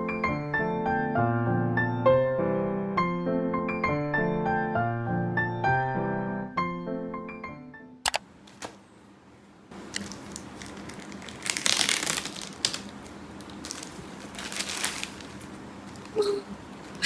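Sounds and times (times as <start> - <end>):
sharp clicks: 8.0 - 8.2
packaging crinkling: 9.8 - 17.0.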